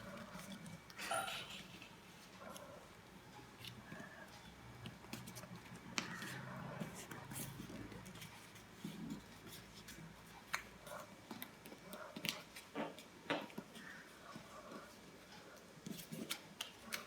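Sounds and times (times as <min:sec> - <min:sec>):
paper creasing clicks and taps: 0:04.8 - 0:08.6, 0:15.6 - 0:17.0.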